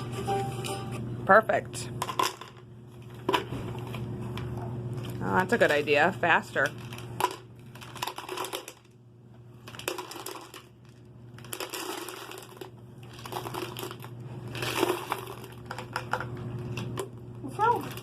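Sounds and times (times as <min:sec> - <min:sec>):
plastic crinkling and rustling: 0:06.6 - 0:08.8, 0:09.6 - 0:16.0.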